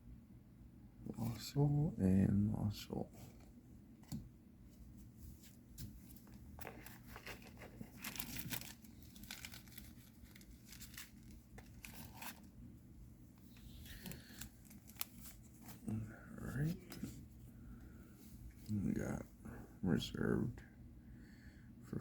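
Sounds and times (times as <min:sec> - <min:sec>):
wrapper tearing and crinkling: 0:06.6 - 0:12.5, 0:13.8 - 0:15.4.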